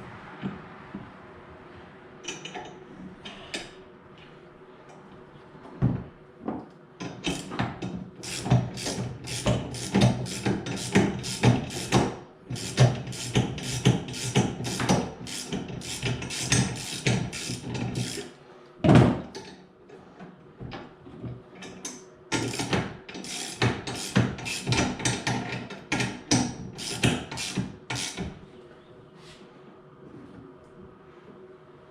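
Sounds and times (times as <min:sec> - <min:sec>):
ratchet wrench clicking: 0:08.2 - 0:12.0, 0:12.6 - 0:18.3, 0:22.4 - 0:25.2, 0:26.8 - 0:28.2.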